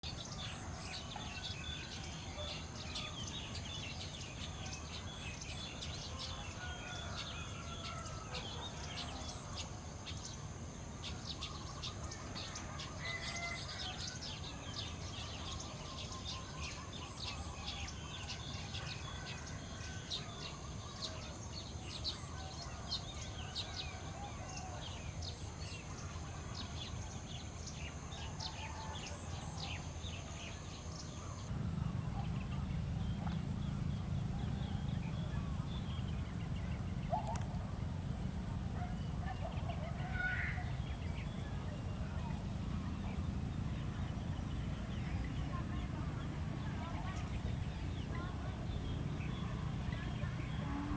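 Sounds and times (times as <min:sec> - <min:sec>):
small birds chirping: 0:00.0 - 0:50.9
steady low hum: 0:29.4 - 0:50.9.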